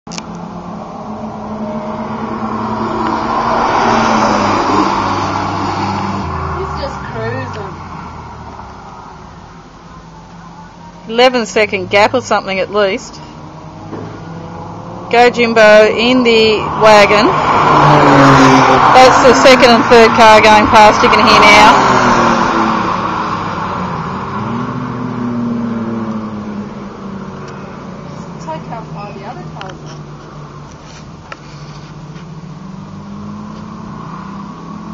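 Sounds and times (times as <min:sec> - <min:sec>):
race car passing at speed: 0:00.2 - 0:09.2, 0:11.3 - 0:30.6, 0:31.7 - 0:34.9.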